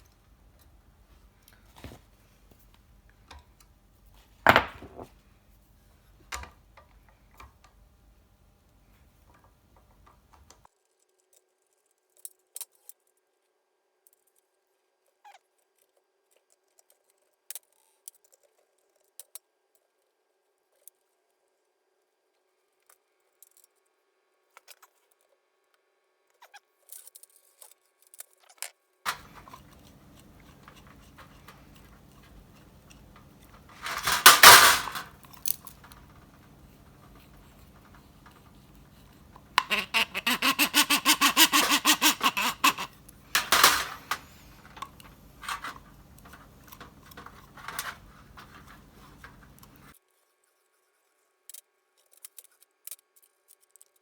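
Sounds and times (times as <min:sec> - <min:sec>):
small metal parts clicking: 0:29.1 - 0:49.9
loud rasping noise: 0:39.5 - 0:44.2.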